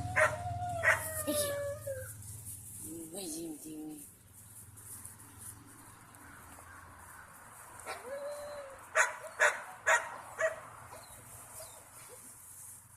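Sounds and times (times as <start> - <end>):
puppy whining: 0.0 - 2.2
puppy yipping: 0.0 - 2.2, 7.9 - 12.2.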